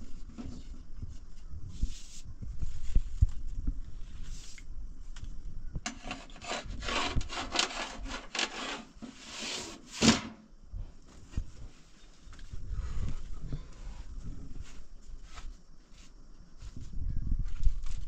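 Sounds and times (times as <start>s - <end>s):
rasping strokes on wood: 6.0s - 9.7s.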